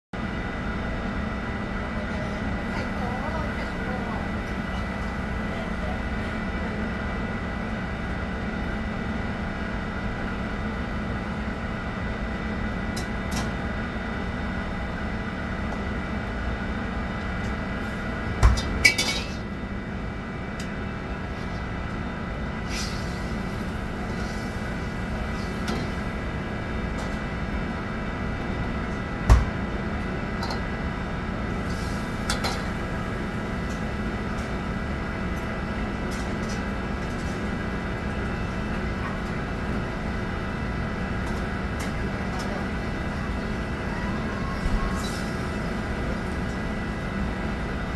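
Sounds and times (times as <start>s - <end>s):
pots and utensils clinking: 18.8s - 19.4s
kitchen equipment humming: 22.7s - 27.9s.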